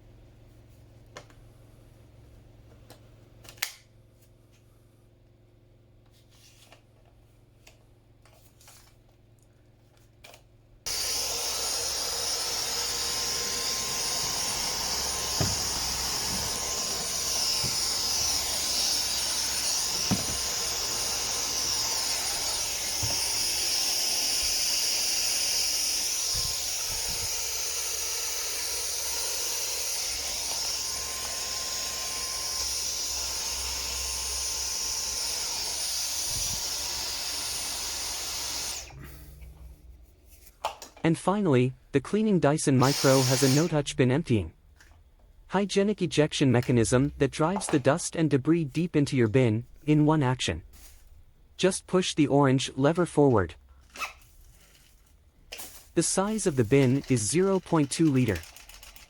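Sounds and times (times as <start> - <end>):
vacuum cleaner whining: 10.9 - 39.5, 42.8 - 43.7, 56.1 - 58.4.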